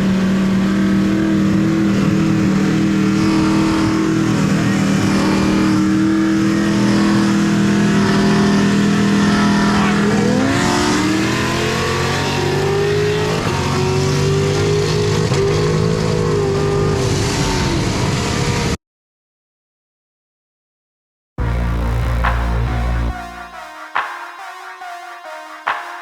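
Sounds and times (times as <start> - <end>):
car engine revving: 0.0 - 18.5, 21.4 - 23.6.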